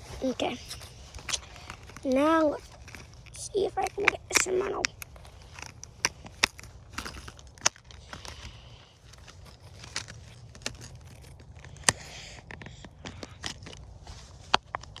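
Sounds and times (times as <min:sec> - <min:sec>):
hands rustling tackle: 0:00.0 - 0:15.0
fishing tackle clicking: 0:00.8 - 0:12.0.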